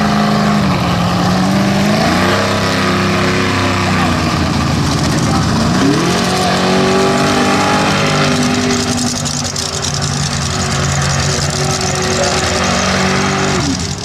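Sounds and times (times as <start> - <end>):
truck engine at high revs: 0.0 - 14.0.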